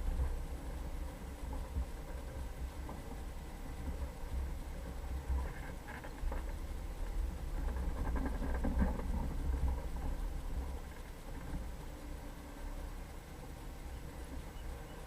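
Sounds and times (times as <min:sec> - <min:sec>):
vehicle driving over rough ground: 0:00.0 - 0:15.0
rattling and clatter: 0:03.8 - 0:11.8.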